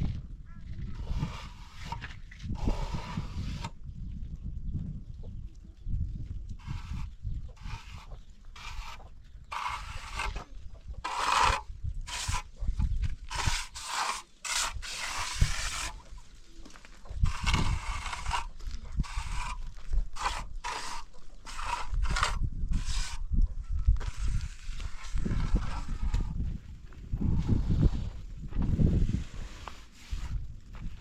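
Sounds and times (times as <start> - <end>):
scraping strokes: 0.8 - 3.8, 6.6 - 23.3, 23.9 - 26.4, 29.0 - 30.4.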